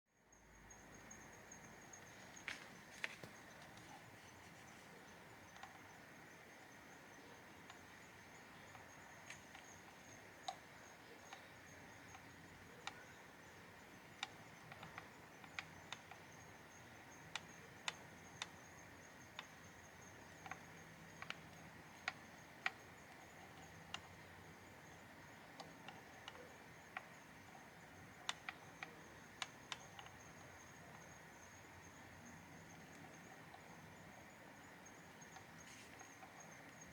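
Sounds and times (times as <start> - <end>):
faint high-pitched hum: 0.1 - 36.9
faint sharp clicks: 5.5 - 5.8, 14.2 - 16.3, 17.2 - 18.7, 20.2 - 24.3, 28.2 - 31.2, 32.7 - 33.7.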